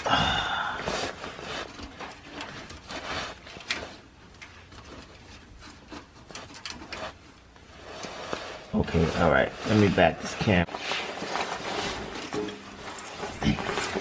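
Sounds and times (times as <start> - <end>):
hands rubbing wet wrap: 6.2 - 14.0.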